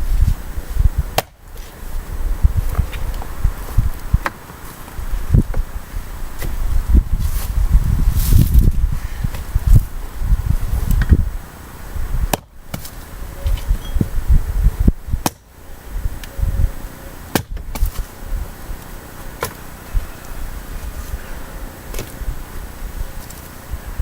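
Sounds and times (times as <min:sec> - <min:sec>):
low uneven rumble: 0:00.0 - 0:17.2
sharp knocks on firewood: 0:15.2 - 0:15.4.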